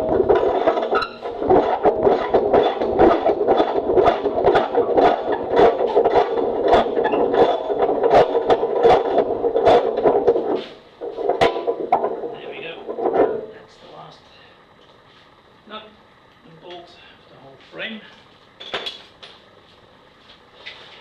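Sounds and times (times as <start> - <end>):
wrench grinding rusted bolt: 0.3 - 10.4.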